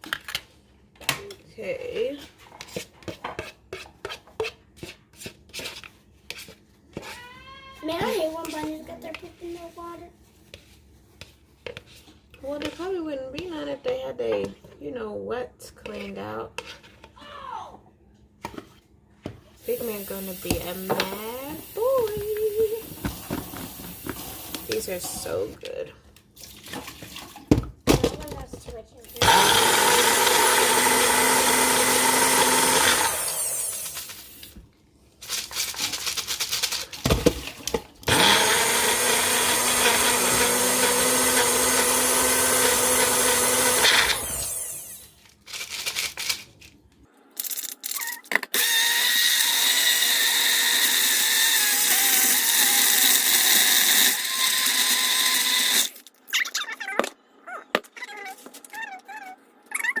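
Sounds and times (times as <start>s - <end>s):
blender blending frozen fruit: 29.2s - 34.2s, 38.1s - 45.1s, 48.5s - 56.0s.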